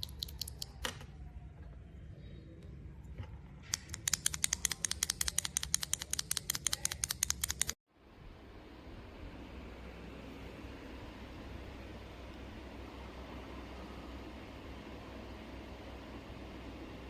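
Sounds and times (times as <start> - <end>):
mechanical keyboard clacking: 3.7 - 7.8.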